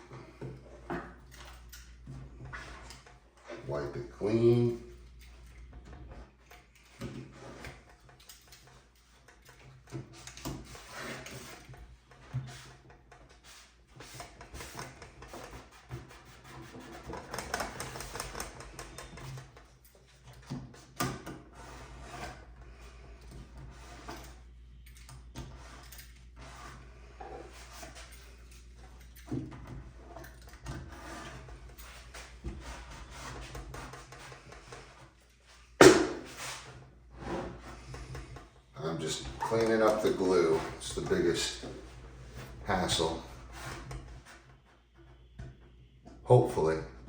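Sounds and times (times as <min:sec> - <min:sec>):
rubbing and scraping on wood: 0:09.9 - 0:19.6, 0:25.4 - 0:45.3.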